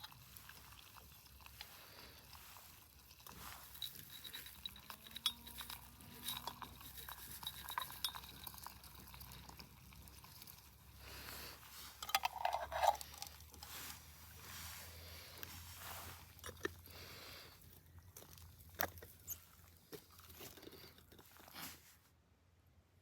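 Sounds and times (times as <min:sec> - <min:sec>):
tableware clattering: 0:12.0 - 0:13.0
tableware clinking: 0:12.0 - 0:13.0.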